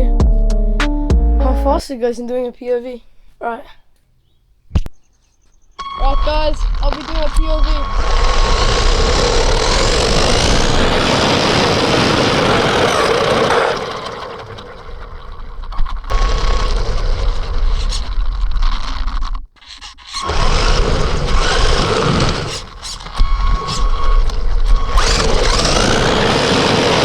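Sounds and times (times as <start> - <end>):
rc truck motor whine: 5.8 - 27.0
tyres rumbling and scraping on ground: 5.9 - 27.0.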